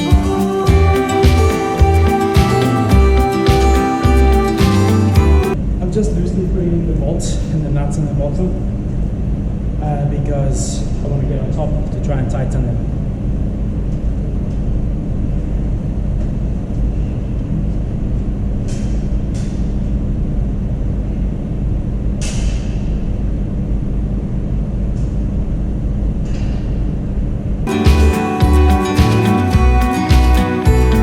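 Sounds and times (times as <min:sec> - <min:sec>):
music: 0:00.0 - 0:05.6, 0:27.7 - 0:31.0
steady low rumble: 0:04.7 - 0:29.8.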